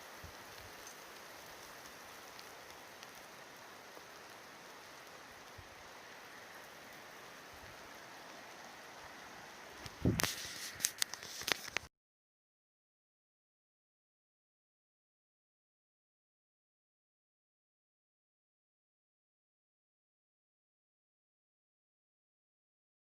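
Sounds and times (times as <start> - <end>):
rain pattering: 0.0 - 11.9.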